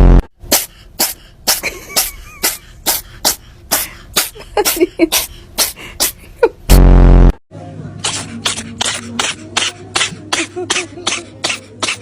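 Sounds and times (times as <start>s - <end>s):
cat sneezing: 0.5s - 6.2s.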